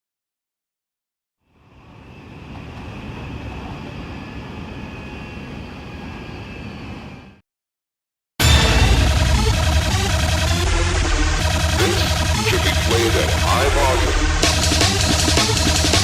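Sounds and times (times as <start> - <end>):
train rumble with high whine: 1.4 - 7.4
loud electronic music: 8.4 - 16.0.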